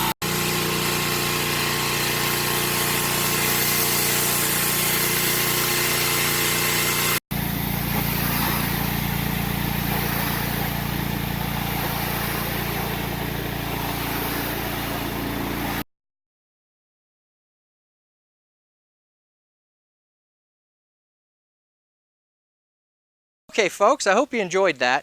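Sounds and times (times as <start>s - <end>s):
pressure washer engine running: 0.0s - 15.8s
water spraying onto concrete: 0.0s - 15.8s.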